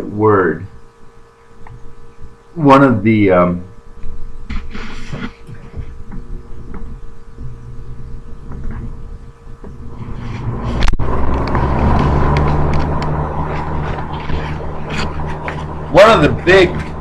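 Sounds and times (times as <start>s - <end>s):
traffic rumble: 5.5s - 17.0s.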